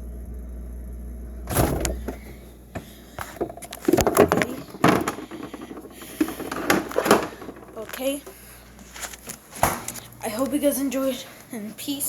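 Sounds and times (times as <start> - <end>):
steady low hum: 0.0 - 12.0
clicks and knocks from handling: 1.8 - 10.1.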